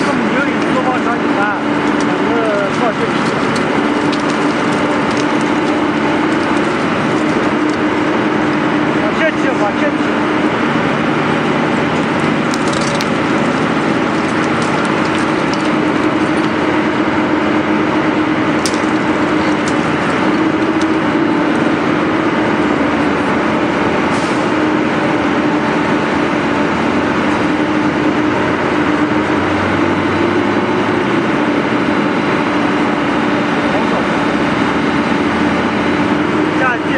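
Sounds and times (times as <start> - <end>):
excavator engine humming: 0.0 - 36.9
sharp cracks of concrete: 1.8 - 8.0, 12.0 - 16.7, 18.6 - 21.6.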